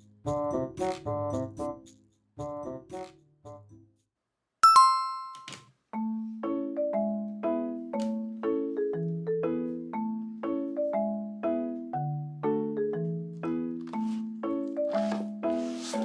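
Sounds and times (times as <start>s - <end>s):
light background music: 6.0s - 16.0s.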